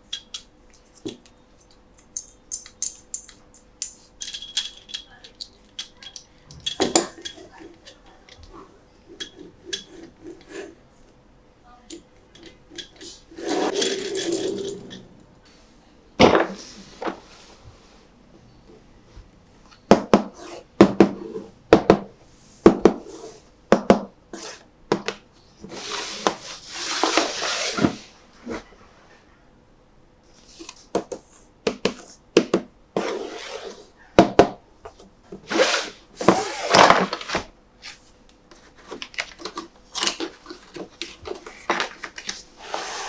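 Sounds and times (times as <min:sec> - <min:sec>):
packaging rustling: 0:38.7 - 0:43.0.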